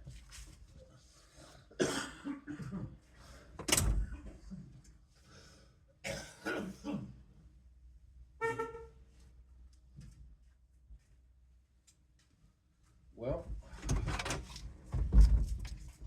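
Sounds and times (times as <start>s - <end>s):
man clearing throat and coughing: 1.7s - 3.0s, 6.0s - 7.2s.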